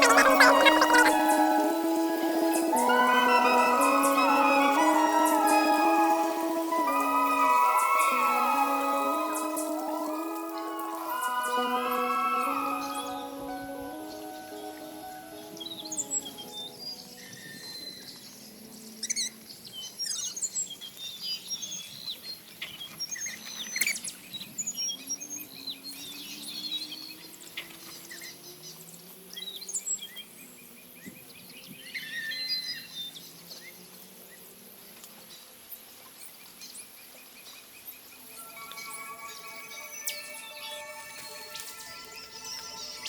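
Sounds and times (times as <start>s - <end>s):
birds chirping: 0.0s - 11.8s.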